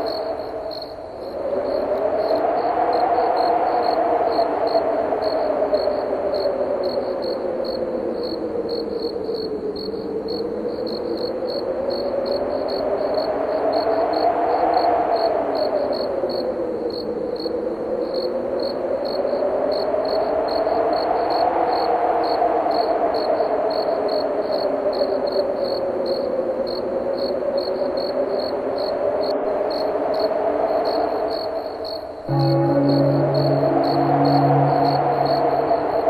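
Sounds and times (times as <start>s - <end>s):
crickets chirping: 0.0s - 36.0s
wind blowing: 0.0s - 36.0s
church bell striking: 32.3s - 36.0s.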